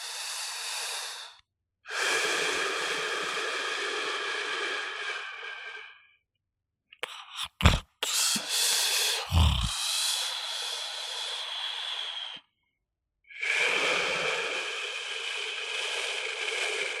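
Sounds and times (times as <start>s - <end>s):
person snoring: 7.0s - 12.4s, 13.4s - 17.0s.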